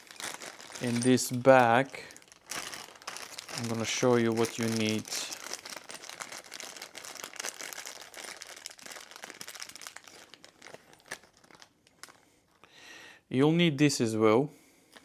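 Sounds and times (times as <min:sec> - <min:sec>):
bag crinkling and rustling: 0:00.0 - 0:12.2.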